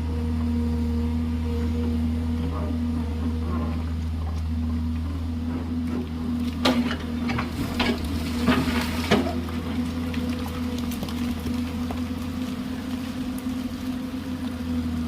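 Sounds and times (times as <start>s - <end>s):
excavator engine running: 0.0s - 15.0s
bucket knocking and scraping gravel: 6.5s - 14.4s.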